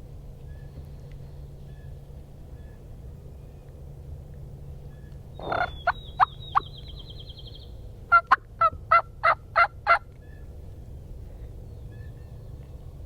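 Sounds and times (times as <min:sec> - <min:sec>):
wild turkey calls: 0:05.4 - 0:07.1, 0:08.1 - 0:10.5
small bird trilling: 0:05.4 - 0:07.7.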